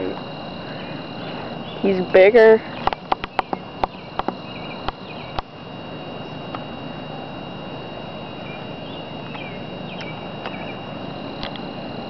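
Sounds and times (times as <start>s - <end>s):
high-pitched insect drone: 0.0s - 12.0s
faint bird chirps: 0.7s - 2.0s, 2.6s - 5.4s, 8.4s - 10.8s
sharp clicks: 2.8s - 5.5s.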